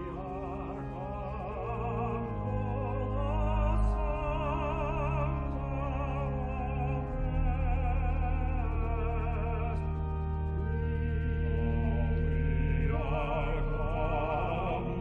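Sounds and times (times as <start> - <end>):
choir singing: 11.4 - 15.0.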